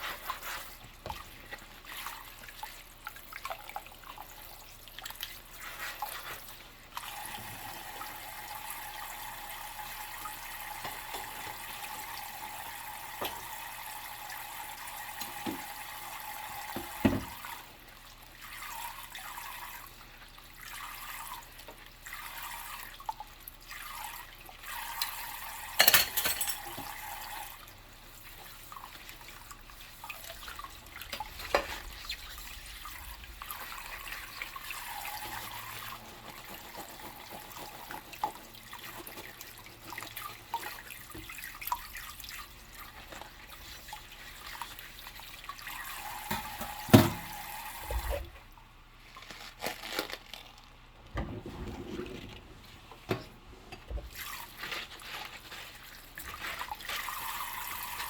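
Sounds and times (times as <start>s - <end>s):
tap water running and splashing: 0.0s - 58.0s
dishes clattering: 25.8s - 27.0s.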